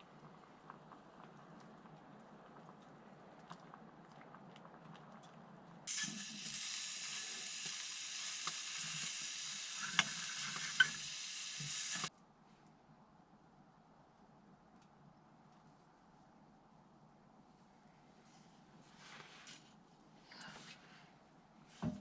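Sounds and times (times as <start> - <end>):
food sizzling: 5.9 - 12.1.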